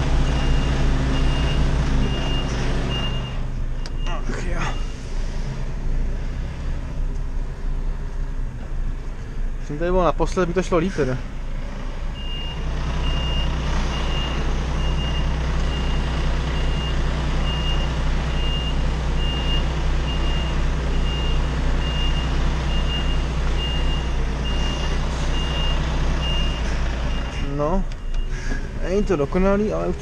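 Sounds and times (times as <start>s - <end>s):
truck reversing alarm beeping: 0.0s - 5.1s, 12.1s - 30.0s
truck engine running: 0.0s - 30.0s.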